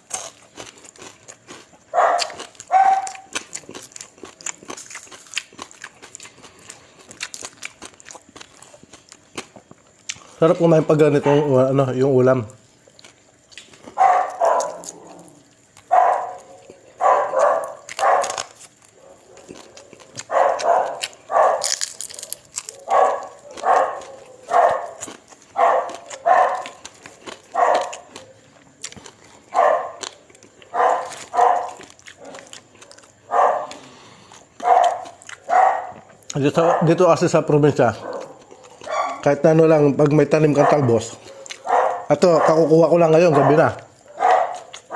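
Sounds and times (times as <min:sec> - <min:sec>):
dog barking: 0:01.9 - 0:03.4, 0:11.2 - 0:11.6, 0:13.9 - 0:15.2, 0:15.9 - 0:28.3, 0:29.5 - 0:33.8, 0:34.6 - 0:37.1, 0:38.0 - 0:39.3, 0:40.5 - 0:44.9.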